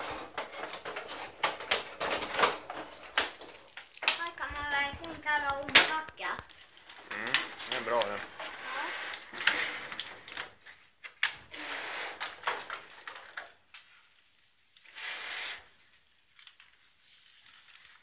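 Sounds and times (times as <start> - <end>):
packaging rustling: 0.0 - 8.4
sharp clicks and taps: 4.0 - 6.6.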